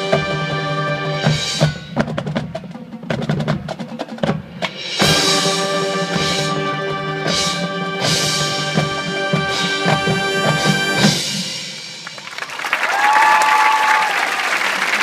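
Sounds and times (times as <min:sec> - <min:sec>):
brass chords: 0:00.0 - 0:02.0, 0:04.8 - 0:12.1
crowd cheering and applauding: 0:12.0 - 0:15.0.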